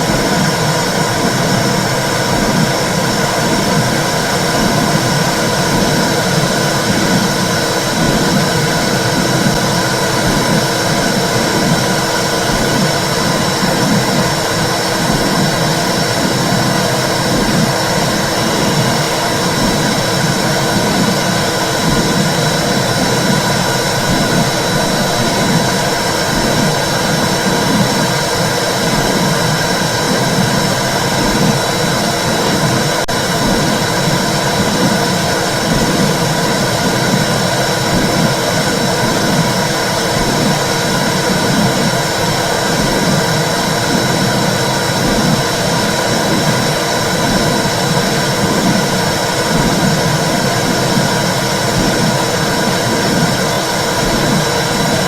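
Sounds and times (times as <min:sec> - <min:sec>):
soft low pulse: 0:00.0 - 0:55.0.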